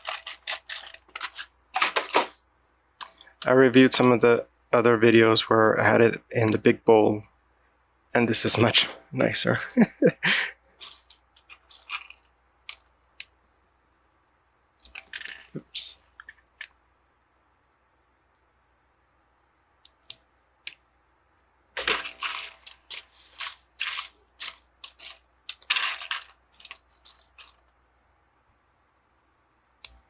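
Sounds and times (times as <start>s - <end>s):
plastic pieces clicking and clattering: 0.0s - 2.4s, 10.8s - 12.9s, 14.8s - 15.6s, 21.8s - 27.8s.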